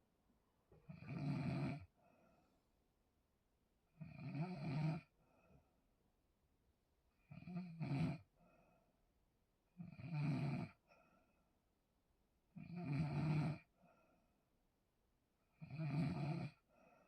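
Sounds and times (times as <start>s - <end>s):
person snoring loudly: 0.9s - 1.9s, 4.0s - 5.1s, 12.6s - 13.7s, 15.6s - 16.6s.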